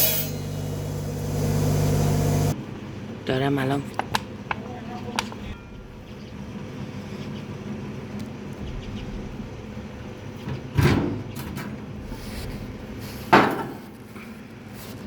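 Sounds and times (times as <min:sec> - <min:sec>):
steady low hum: 0:00.0 - 0:03.3, 0:05.4 - 0:13.3.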